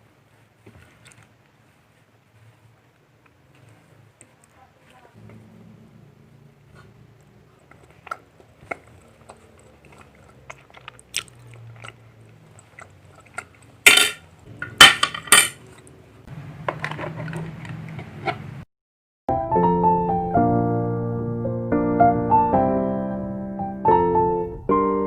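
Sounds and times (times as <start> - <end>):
rustling and scraping: 0.0 - 5.6, 16.7 - 18.6.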